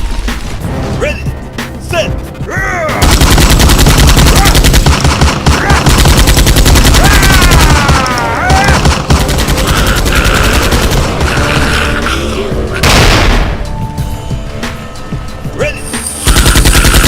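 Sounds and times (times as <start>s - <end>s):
rapid machine-gun fire: 3.0s - 11.6s, 16.2s - 17.0s
falling pitched wail: 6.8s - 8.9s, 9.5s - 12.9s.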